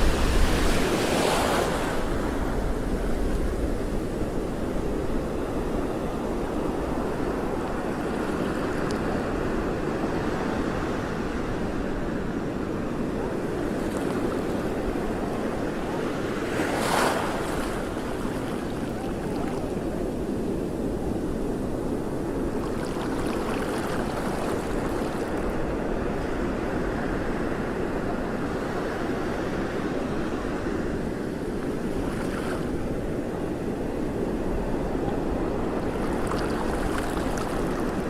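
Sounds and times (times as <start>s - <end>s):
water rushing: 0.0s - 2.8s, 21.8s - 25.5s, 34.8s - 38.0s
wind rushing: 0.0s - 3.1s.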